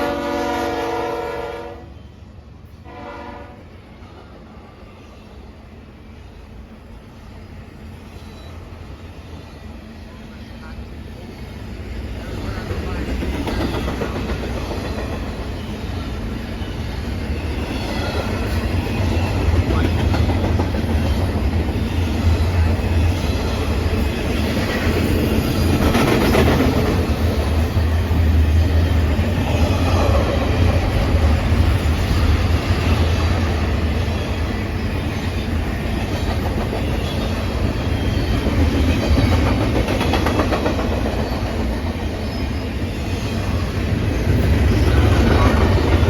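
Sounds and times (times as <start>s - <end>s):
train rumbling past: 0.0s - 46.0s
wheel-on-rail noise: 11.2s - 46.0s.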